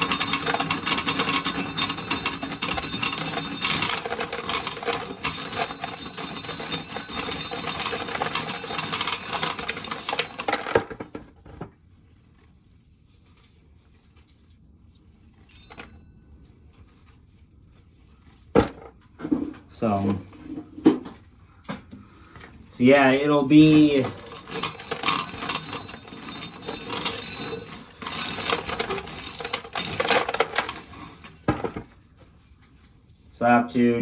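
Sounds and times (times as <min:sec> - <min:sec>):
corn kernels rattling: 0:00.0 - 0:10.6, 0:22.8 - 0:31.6.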